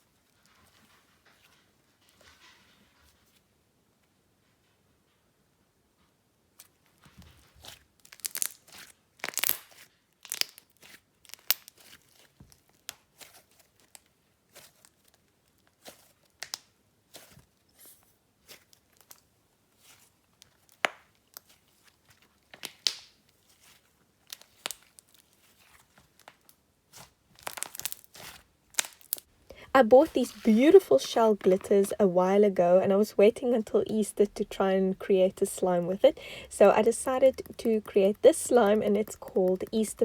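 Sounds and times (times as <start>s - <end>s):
slime squeezed with sticky pops: 7.6s - 13.5s, 22.5s - 29.3s.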